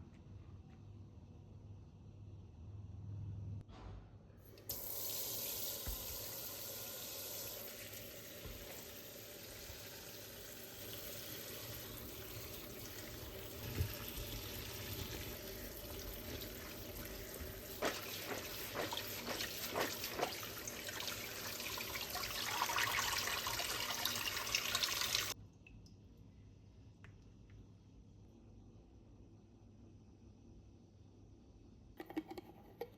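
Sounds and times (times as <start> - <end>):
tap water running into sink: 4.7 - 25.4.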